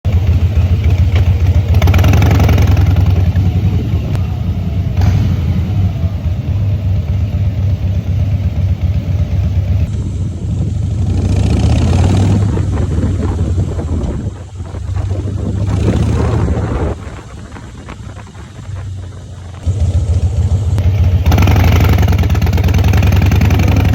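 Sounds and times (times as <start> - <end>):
motorcycle engine riding: 0.0 - 23.9.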